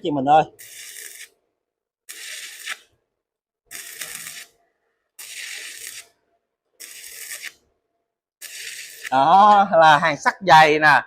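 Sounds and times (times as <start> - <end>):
welding arc crackling: 0.4 - 1.4, 2.1 - 2.9, 3.7 - 4.6, 5.2 - 6.2, 6.8 - 7.6, 8.4 - 10.2.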